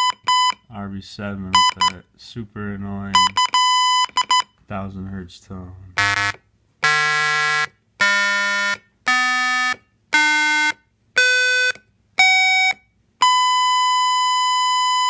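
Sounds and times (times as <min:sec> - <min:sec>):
buzzy square-wave tones stepping up: 0:06.0 - 0:11.7.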